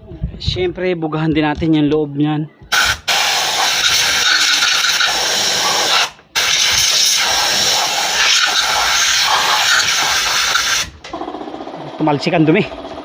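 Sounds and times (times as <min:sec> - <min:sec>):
compressed air blow gun hissing: 0:02.7 - 0:11.1.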